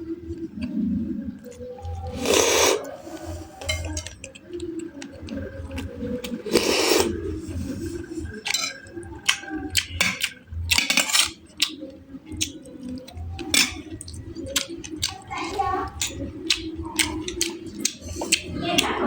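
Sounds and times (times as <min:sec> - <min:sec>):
chewing: 0:00.3 - 0:19.0
cutlery clinking against dish: 0:03.6 - 0:04.4, 0:08.5 - 0:11.8, 0:13.4 - 0:13.9.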